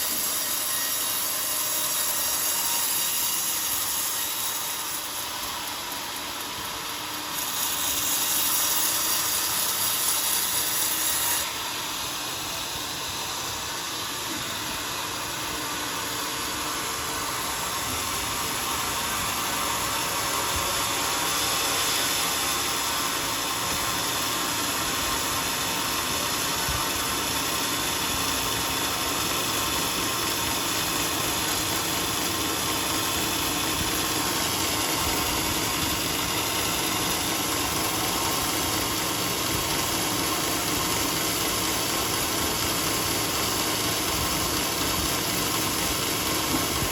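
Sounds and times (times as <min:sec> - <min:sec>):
bandsaw cutting wood: 0:00.0 - 0:46.9.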